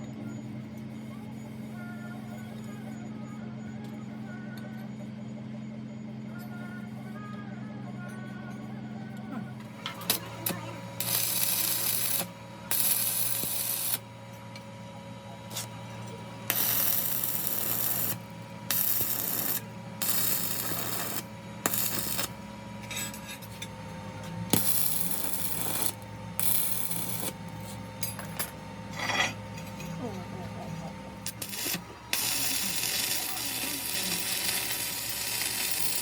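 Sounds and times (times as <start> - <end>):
low machine hum: 0.0 - 36.0.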